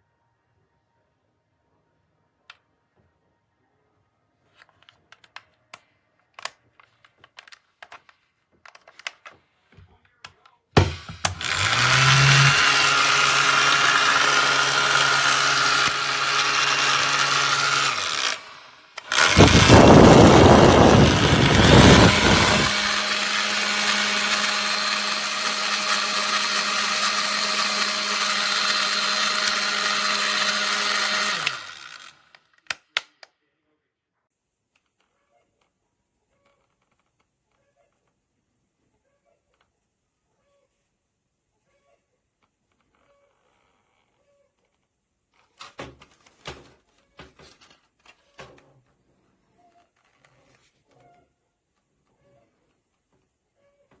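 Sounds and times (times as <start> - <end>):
hair dryer running: 10.8 - 32.1.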